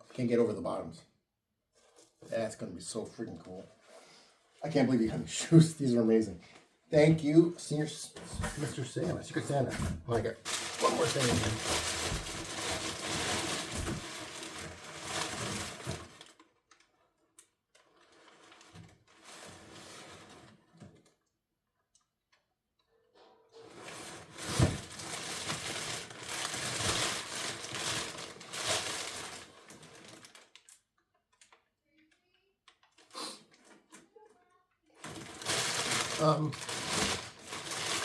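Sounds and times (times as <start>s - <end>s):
paper rustling and crinkling: 8.2s - 16.9s, 23.7s - 30.8s, 35.0s - 38.0s.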